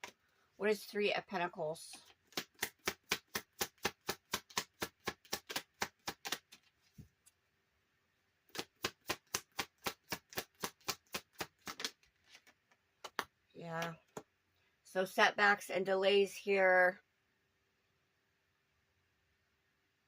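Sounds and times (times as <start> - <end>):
cards being shuffled by hand: 1.9 - 7.4, 8.5 - 14.0.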